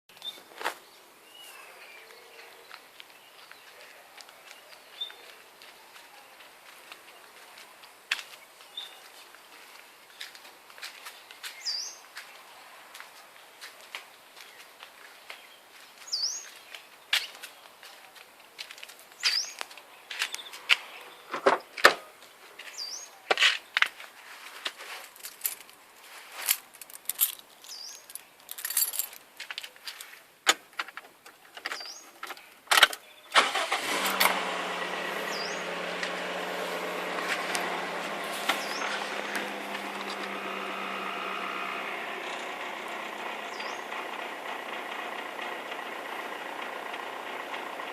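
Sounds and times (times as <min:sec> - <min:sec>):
bird chirping: 0:00.1 - 0:09.2, 0:11.1 - 0:12.6, 0:14.4 - 0:17.8, 0:19.1 - 0:21.8, 0:22.6 - 0:23.3, 0:27.6 - 0:28.4, 0:31.7 - 0:33.4, 0:35.0 - 0:44.2
car engine starting and idling: 0:33.4 - 0:47.9.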